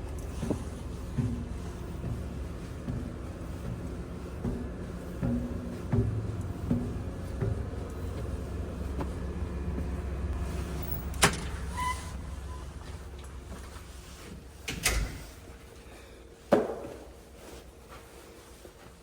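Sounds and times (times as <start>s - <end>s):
car engine rumbling: 0.0s - 14.7s.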